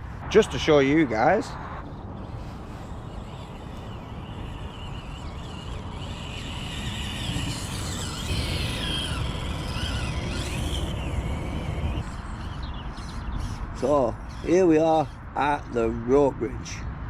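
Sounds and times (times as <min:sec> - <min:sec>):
steady low rumble: 0:00.0 - 0:12.2
small bird singing: 0:01.9 - 0:15.8.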